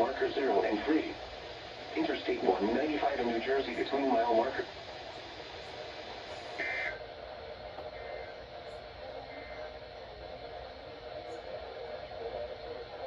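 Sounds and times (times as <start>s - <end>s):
buzzy two-tone data bursts: 0.0s - 7.0s
radio hiss: 0.0s - 13.0s.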